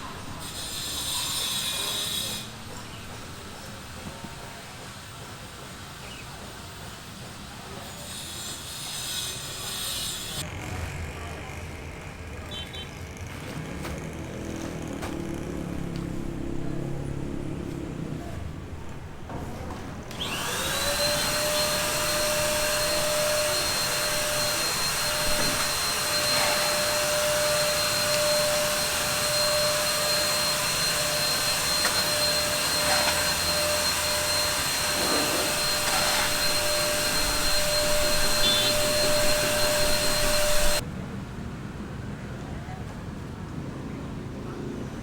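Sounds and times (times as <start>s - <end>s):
small electric motor whining: 20.1s - 40.8s.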